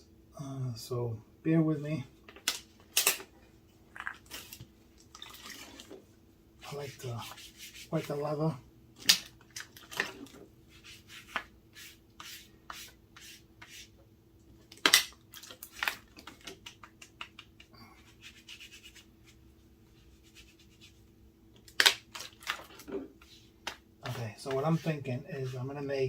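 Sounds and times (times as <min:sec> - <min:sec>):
faint steady hum: 0:00.0 - 0:26.0
hands working leather: 0:06.7 - 0:08.2, 0:10.7 - 0:14.0, 0:22.8 - 0:25.8.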